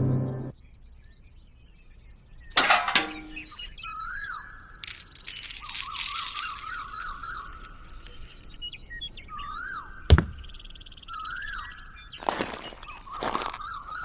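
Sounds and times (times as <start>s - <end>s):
birds calling and chirping: 0.5s - 14.0s
handling noise: 10.1s - 10.6s
sharp knock: 10.1s - 10.6s.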